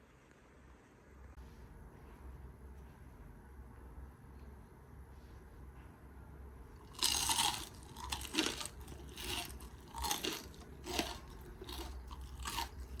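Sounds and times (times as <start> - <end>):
crunching of fried potato: 6.8 - 13.0.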